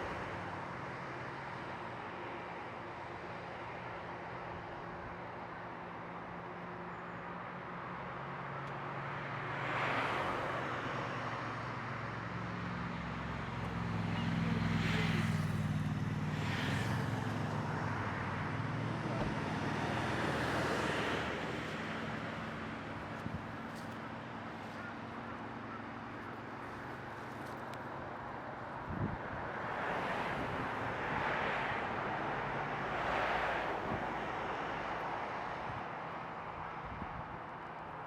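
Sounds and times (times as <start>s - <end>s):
vehicles passing: 7.8s - 38.0s.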